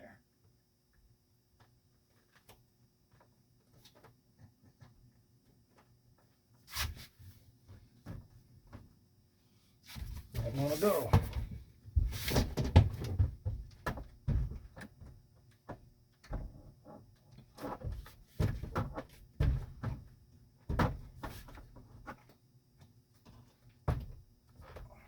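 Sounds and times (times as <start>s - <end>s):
refrigerator door knocking and clattering: 11.1s - 14.9s, 17.9s - 20.1s, 20.7s - 21.2s.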